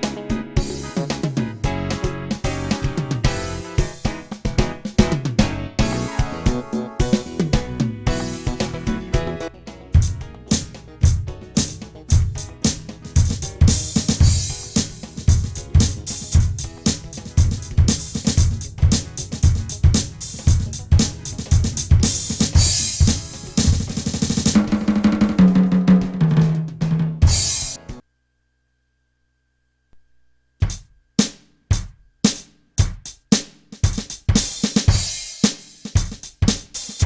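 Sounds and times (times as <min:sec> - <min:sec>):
electronic drum kit beat: 0:00.0 - 0:28.0, 0:30.6 - 0:37.0
tom fill: 0:00.0 - 0:28.0.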